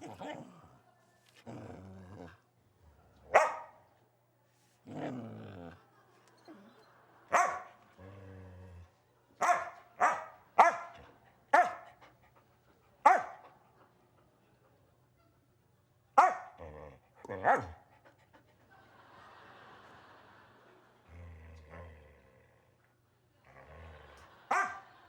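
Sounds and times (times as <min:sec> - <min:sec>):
dog growling: 0:00.0 - 0:00.8, 0:01.4 - 0:02.4, 0:04.8 - 0:05.9, 0:07.9 - 0:09.0, 0:16.5 - 0:17.8, 0:21.1 - 0:22.8, 0:23.4 - 0:24.4
dog barking: 0:03.3 - 0:03.8, 0:07.3 - 0:07.7, 0:09.4 - 0:12.0, 0:13.0 - 0:13.4, 0:16.2 - 0:16.6, 0:17.3 - 0:17.8, 0:24.4 - 0:25.0.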